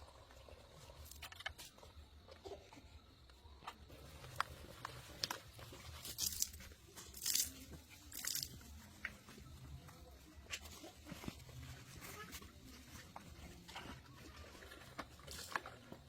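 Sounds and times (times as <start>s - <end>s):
sharp crunching and tearing: 5.1s - 8.8s.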